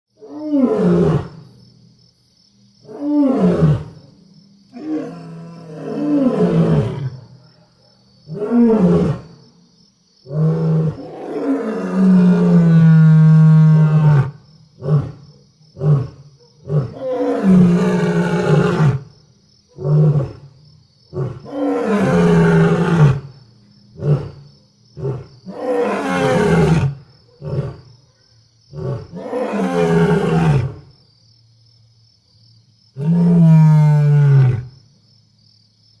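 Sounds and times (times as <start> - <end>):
lion roaring: 0.2 - 1.4, 4.7 - 7.4, 10.3 - 15.2, 15.8 - 19.1, 21.1 - 23.3, 25.0 - 27.9, 28.8 - 30.9, 33.0 - 34.7.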